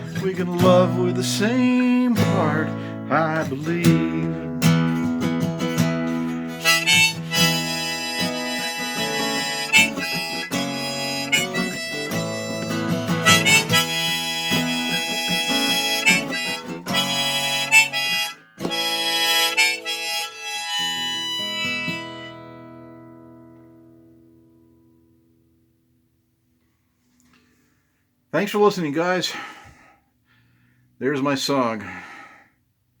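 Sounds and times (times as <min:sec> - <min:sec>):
harmonica melody: 0:00.0 - 0:23.2
strummed acoustic guitar: 0:00.0 - 0:25.8.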